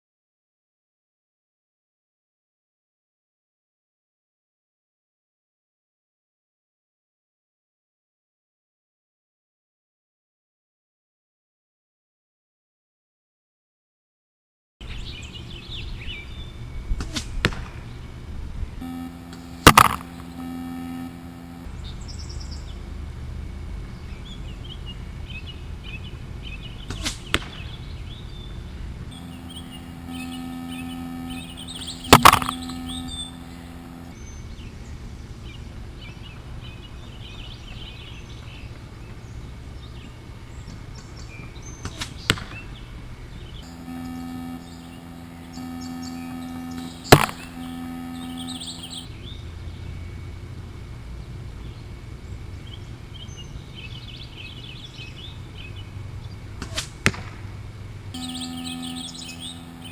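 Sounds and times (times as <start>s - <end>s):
steady low hum: 17.7s - 41.0s, 42.6s - 59.9s
birds chirping faintly: 27.8s - 41.7s, 42.6s - 50.2s, 58.2s - 59.9s.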